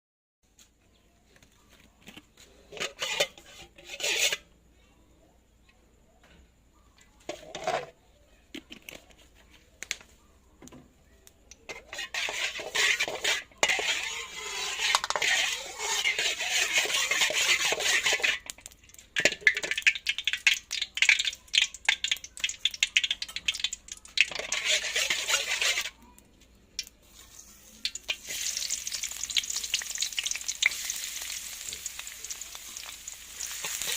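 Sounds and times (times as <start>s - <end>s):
utensils and cookware clattering: 2.0s - 4.5s, 7.2s - 9.3s, 11.6s - 26.0s, 27.0s - 33.9s.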